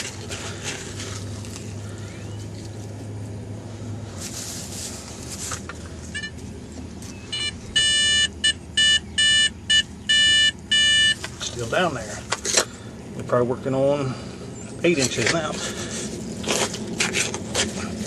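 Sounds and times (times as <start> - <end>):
steady low hum: 0.0 - 18.0
metal detector beeps: 6.1 - 6.4, 7.3 - 11.2.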